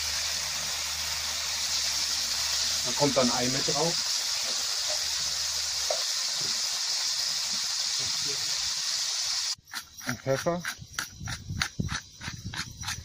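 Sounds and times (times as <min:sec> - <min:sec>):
meat sizzling in a pan: 0:00.0 - 0:09.6.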